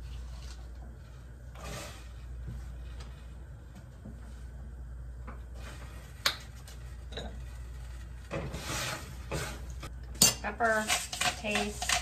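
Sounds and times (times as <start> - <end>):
steady low hum: 0.0 - 12.0
kitchen utensils clicking and knocking: 10.2 - 12.0.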